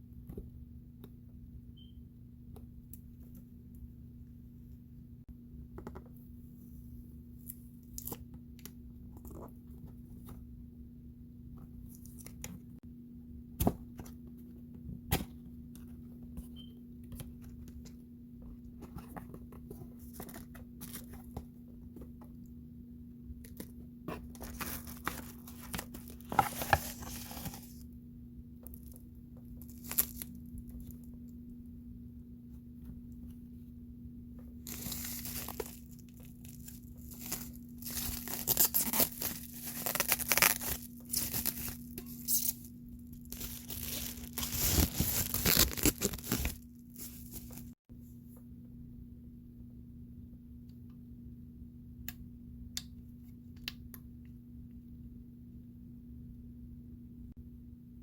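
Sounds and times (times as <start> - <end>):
steady low hum: 0.0 - 58.0
paper or plastic tearing: 34.7 - 42.7, 43.3 - 47.7.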